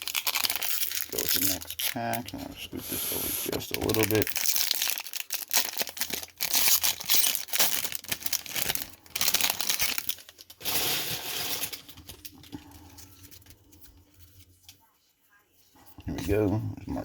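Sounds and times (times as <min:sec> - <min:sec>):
wrapper tearing and crinkling: 0:00.0 - 0:02.7, 0:03.5 - 0:12.5.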